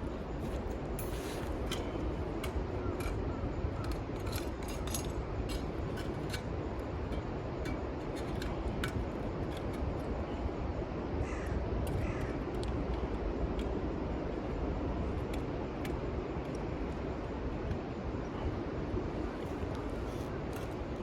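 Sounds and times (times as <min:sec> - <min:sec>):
camping gear clicking: 0:00.0 - 0:03.2
low outdoor rumble: 0:00.0 - 0:21.0.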